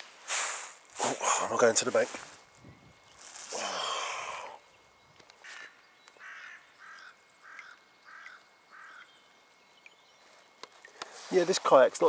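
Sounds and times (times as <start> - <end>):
crow cawing: 5.4 - 9.2.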